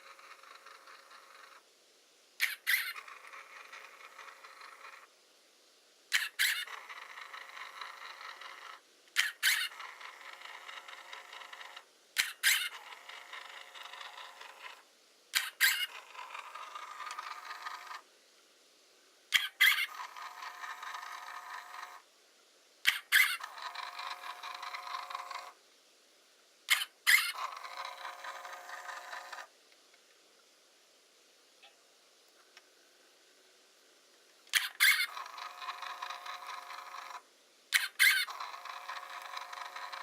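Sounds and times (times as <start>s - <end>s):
camera winder motor squealing: 2.4s - 3.0s, 6.2s - 6.7s, 9.2s - 9.8s, 12.2s - 12.8s, 15.4s - 16.0s, 19.4s - 20.0s, 22.9s - 25.1s, 26.7s - 29.4s, 34.5s - 37.2s, 37.8s - 40.0s.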